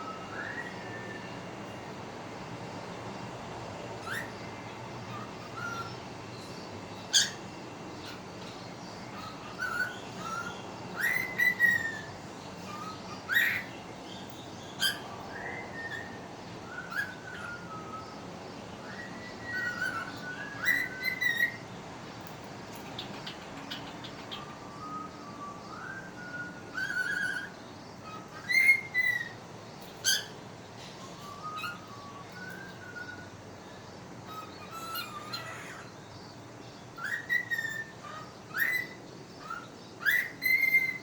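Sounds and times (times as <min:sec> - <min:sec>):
bird whistling notes: 0:00.0 - 0:01.4, 0:07.1 - 0:07.4, 0:09.1 - 0:21.6, 0:22.9 - 0:30.4, 0:31.0 - 0:35.9, 0:37.0 - 0:41.0
bird chirps: 0:04.0 - 0:41.0.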